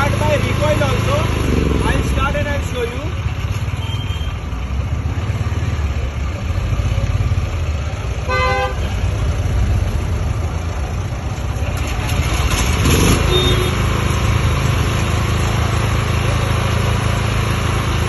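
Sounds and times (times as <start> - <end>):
generator engine running: 0.0 - 18.0
horn toot: 8.3 - 8.8, 12.9 - 13.8.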